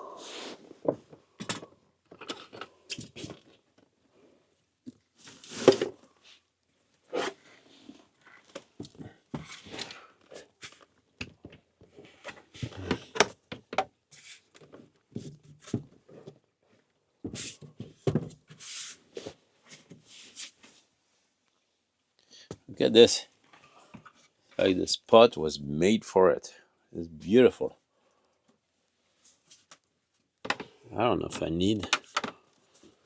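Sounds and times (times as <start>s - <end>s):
objects knocking and clunking: 30.4s - 30.8s.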